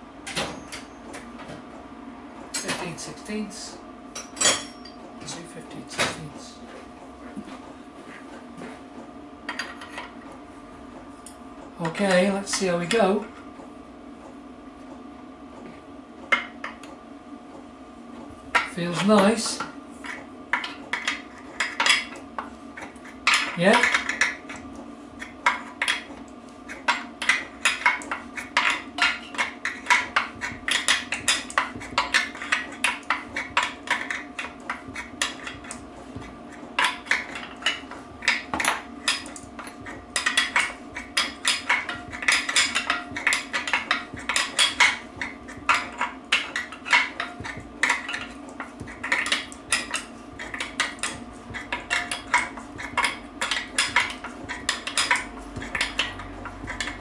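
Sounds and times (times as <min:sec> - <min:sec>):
steady hum: 0:00.0 - 0:57.0
spanners clicking on metal nut: 0:36.8 - 0:57.0.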